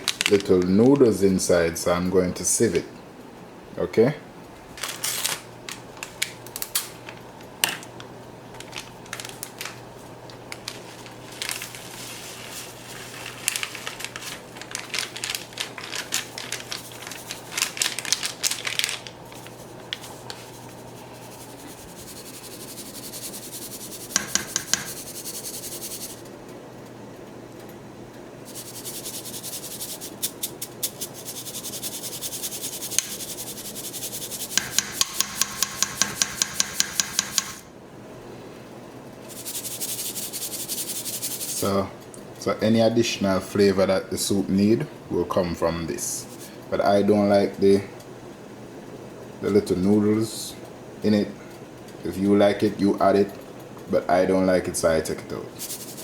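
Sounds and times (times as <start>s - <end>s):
packet crinkling: 0.0s - 1.1s, 4.8s - 7.2s, 8.5s - 23.7s.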